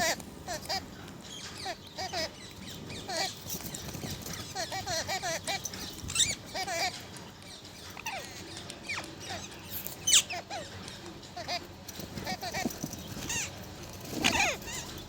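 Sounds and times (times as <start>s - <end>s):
parrot squawks: 0.0s - 3.4s, 4.3s - 7.0s, 14.2s - 15.0s.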